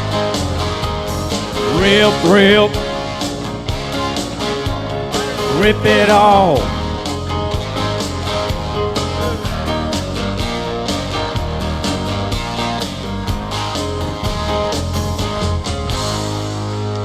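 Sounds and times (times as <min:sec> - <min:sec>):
rock guitar: 0:00.0 - 0:17.0
steady drum beat: 0:01.1 - 0:08.3.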